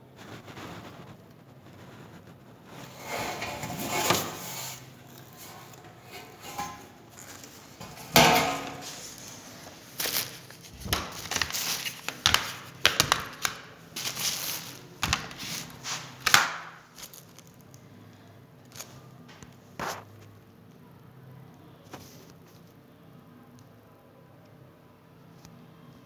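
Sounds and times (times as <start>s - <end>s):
hard objects clattering: 2.7s - 17.4s.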